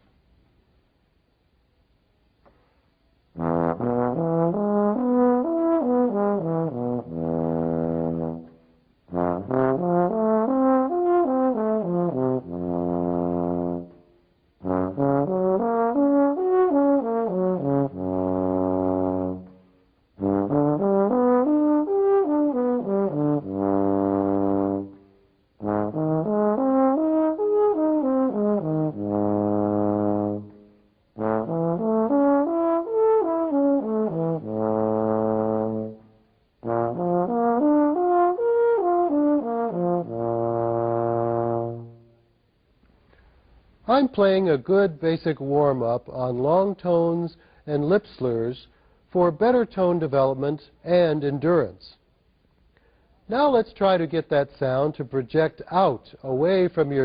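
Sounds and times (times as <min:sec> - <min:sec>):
low brass instrument playing: 0:03.4 - 0:42.4
player breathing: 0:42.9 - 0:43.7, 0:47.4 - 0:47.7, 0:48.7 - 0:49.1, 0:52.6 - 0:53.2.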